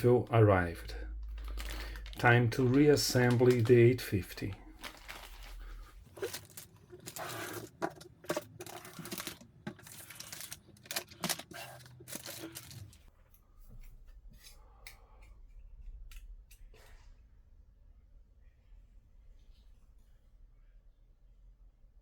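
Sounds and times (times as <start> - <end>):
parts clicking and knocking: 1.1 - 13.1
packaging crinkling and tearing: 1.2 - 13.1.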